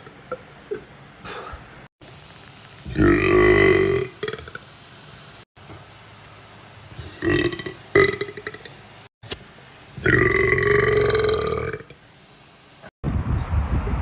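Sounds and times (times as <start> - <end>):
person burping: 0.0 - 0.9, 2.9 - 4.6, 7.0 - 8.7, 10.0 - 11.9.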